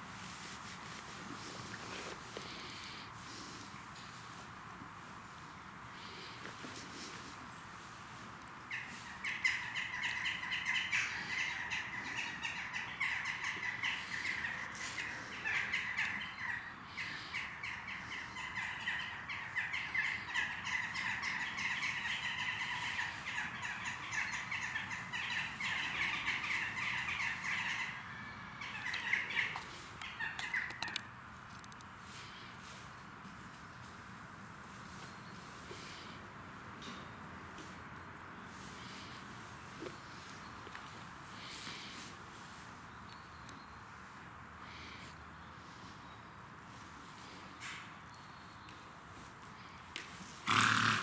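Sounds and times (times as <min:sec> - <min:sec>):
birds chirping and chattering: 0:08.7 - 0:31.2.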